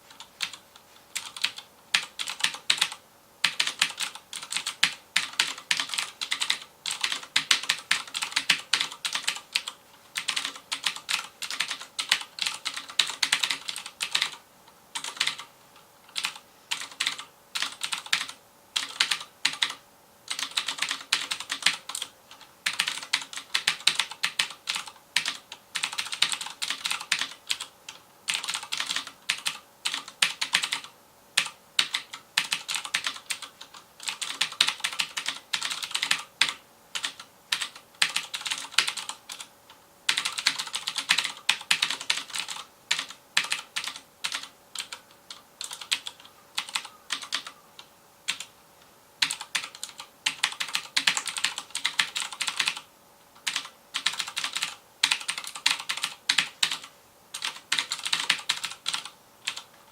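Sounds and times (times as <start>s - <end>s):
clicky mechanical keyboard typing: 0.1s - 0.6s, 1.2s - 14.4s, 15.0s - 15.5s, 16.1s - 48.5s, 49.2s - 59.9s.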